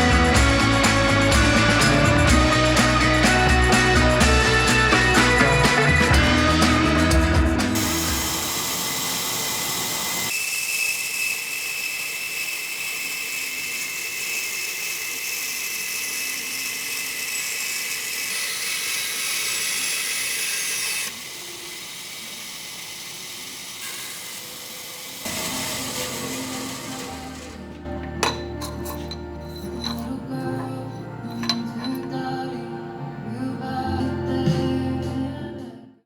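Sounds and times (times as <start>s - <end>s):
high-speed power tool whirring: 1.8s - 27.7s.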